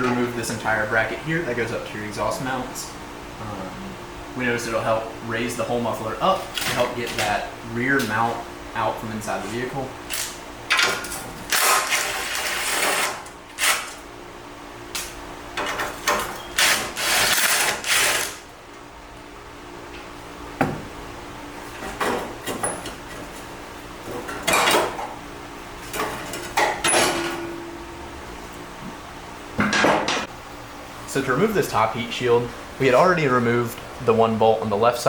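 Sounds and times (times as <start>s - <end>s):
electric ratchet running: 16.6s - 18.4s.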